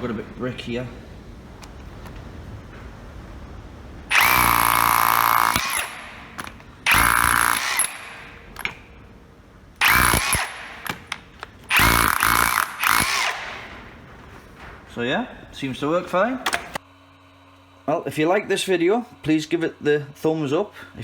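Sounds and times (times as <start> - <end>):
hammer drill drilling into brick: 4.1 - 8.7, 9.8 - 13.7.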